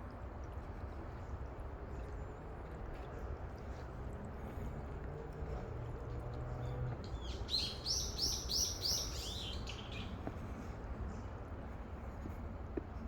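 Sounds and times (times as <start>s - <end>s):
songbird singing: 7.1s - 10.2s.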